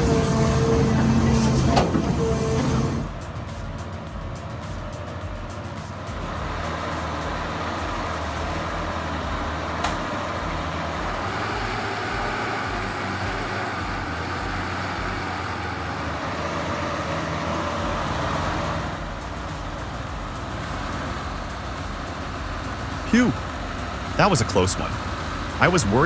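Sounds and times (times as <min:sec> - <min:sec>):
diesel engine running under load: 0:00.0 - 0:26.0
sharp click: 0:09.8 - 0:10.2.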